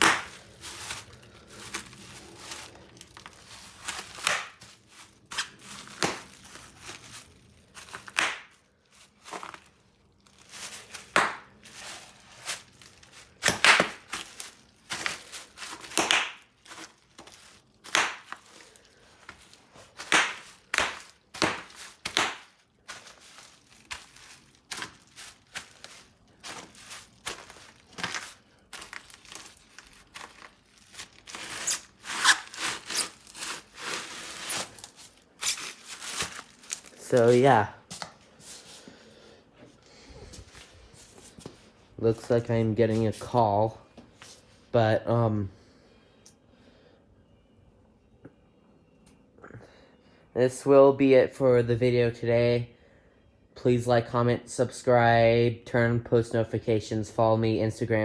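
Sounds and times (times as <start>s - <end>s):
bubble wrap popping: 0.0s - 38.2s
plastic crinkling: 0.0s - 38.9s.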